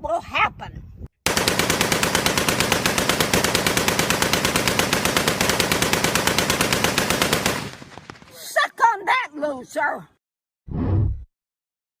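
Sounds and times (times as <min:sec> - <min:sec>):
machine-gun fire: 0:01.3 - 0:08.4.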